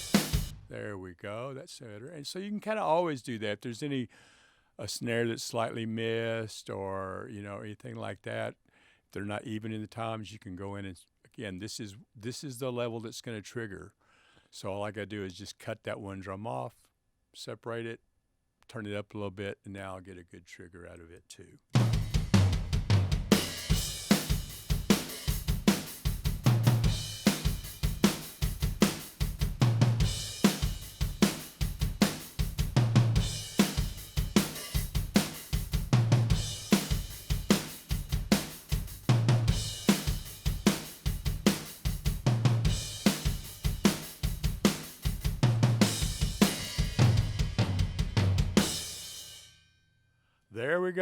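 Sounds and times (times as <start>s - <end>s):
rock drum groove: 0.0s - 0.8s, 21.8s - 49.5s.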